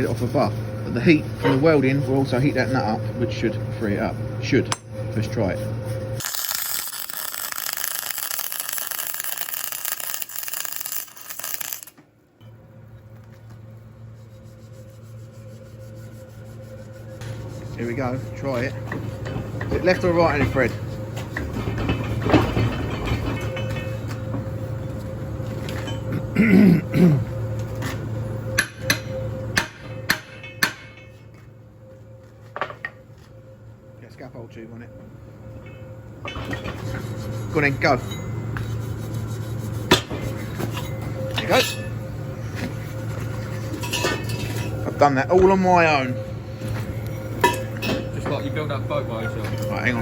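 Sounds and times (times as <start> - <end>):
low steady hum: 0.0 - 50.0
arc welding crackle: 6.2 - 12.0
metal clanks with ringing: 21.5 - 24.4, 28.6 - 31.4, 37.8 - 38.7, 40.6 - 42.1, 43.7 - 46.3, 47.3 - 50.0.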